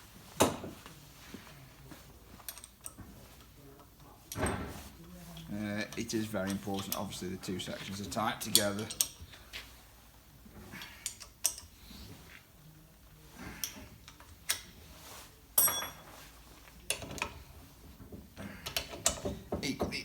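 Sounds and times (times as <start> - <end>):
metallic clink with ring: 15.6 - 16.0.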